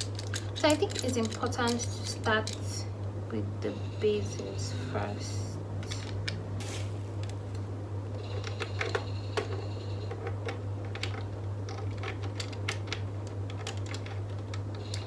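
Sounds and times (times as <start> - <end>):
plastic parts clicking and knocking: 0.0 - 2.7, 8.4 - 15.0
steady low hum: 0.0 - 15.0.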